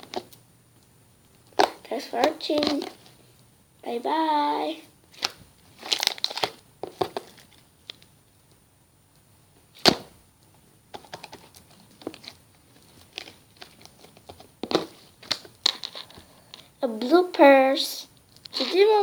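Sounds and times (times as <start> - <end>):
rustling and crinkling: 0.0 - 3.4, 5.1 - 8.6, 9.6 - 16.7, 18.2 - 19.0.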